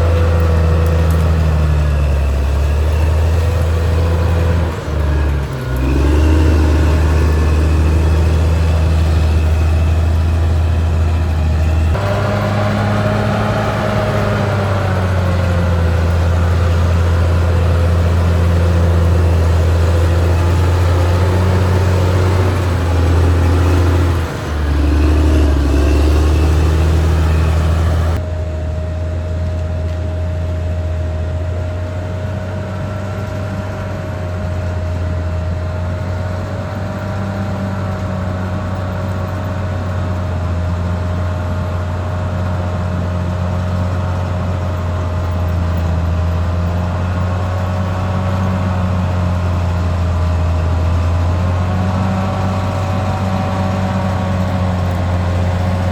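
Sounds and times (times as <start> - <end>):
high whine: 0.0 - 42.1
bulldozer diesel engine droning: 0.0 - 55.9.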